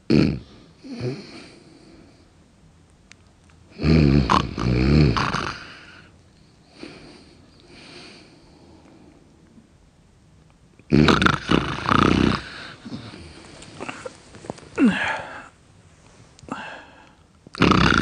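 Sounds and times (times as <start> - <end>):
person snoring loudly: 0.1 - 1.5, 3.7 - 6.0, 10.9 - 14.0, 17.6 - 18.0
soft breathing: 0.5 - 2.4, 5.6 - 9.6, 12.4 - 17.3.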